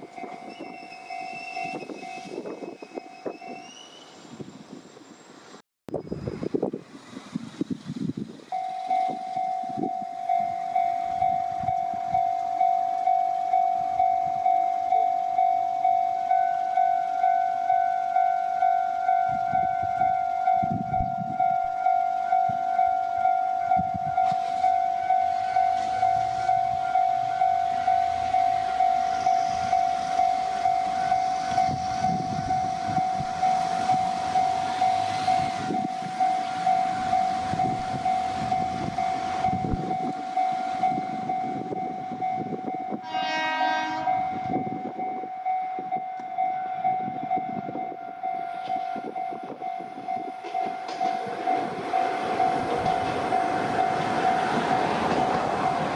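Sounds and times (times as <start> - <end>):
level-crossing warning bell: 0.0 - 4.4, 8.5 - 55.9
train wheels rumbling on rail: 0.0 - 55.9
short train horn blast: 43.0 - 44.6.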